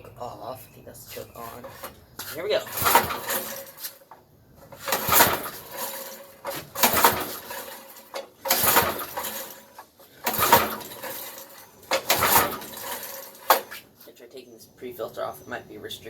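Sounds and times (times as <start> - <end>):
engine cranking over: 1.4 - 13.9
recoil starter rope whirring: 1.5 - 13.8.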